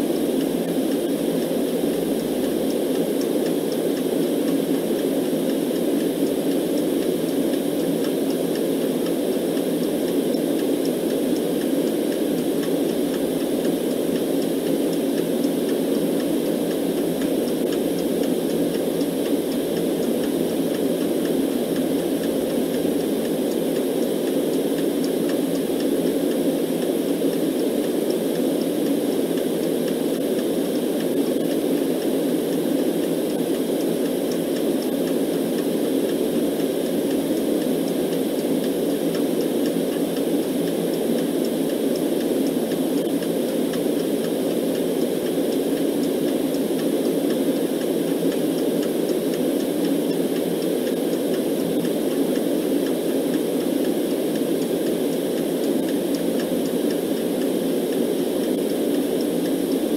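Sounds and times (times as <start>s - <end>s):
muffled white noise: 0.0s - 59.9s
clock ticking: 0.1s - 59.9s.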